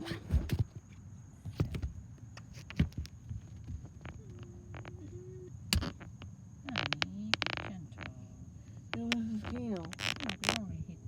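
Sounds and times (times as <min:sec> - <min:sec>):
soft thumps and knocks: 0:01.4 - 0:06.2.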